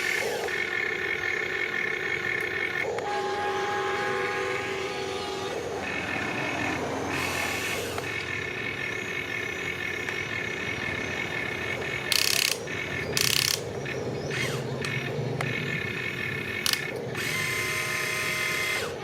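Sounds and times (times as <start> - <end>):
electric motors whining: 0.0 - 19.0.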